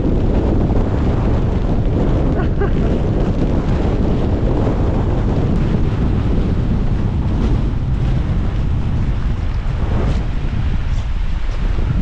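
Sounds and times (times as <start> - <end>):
strong wind buffeting microphone: 0.0 - 12.0.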